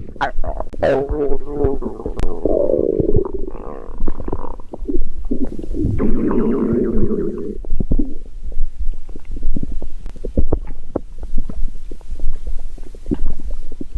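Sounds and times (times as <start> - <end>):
stomach growling: 0.0 - 13.9.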